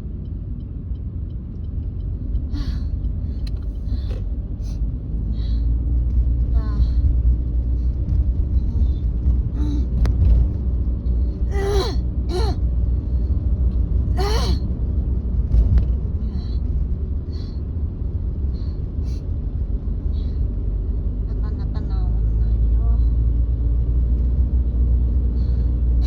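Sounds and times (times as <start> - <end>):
car cabin road rumble: 0.0 - 26.0.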